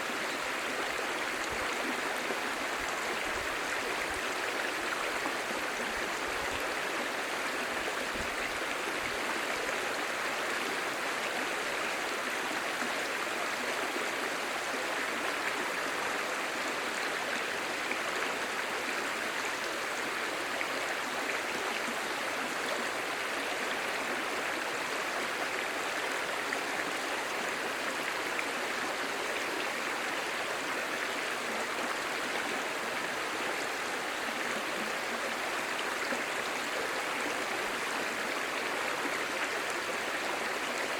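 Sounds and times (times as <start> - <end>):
stream babbling over stones: 0.0 - 40.9.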